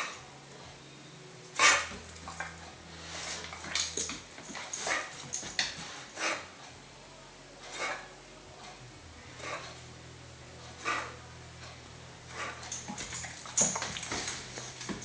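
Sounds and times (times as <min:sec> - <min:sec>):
dog coughing: 0:01.6 - 0:02.4, 0:10.8 - 0:11.2.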